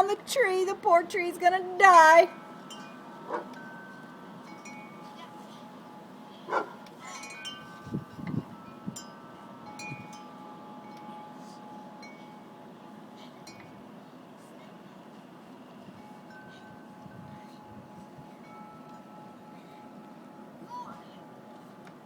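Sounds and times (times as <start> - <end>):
wind chimes ringing: 1.1 - 12.8, 15.9 - 20.7.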